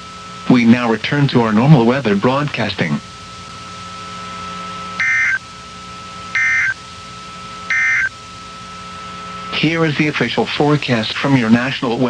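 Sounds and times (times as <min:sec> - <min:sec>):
faint steady tone and hum: 0:00.0 - 0:12.0
warbling digital data tones: 0:05.0 - 0:05.4, 0:06.4 - 0:06.8, 0:07.7 - 0:08.1.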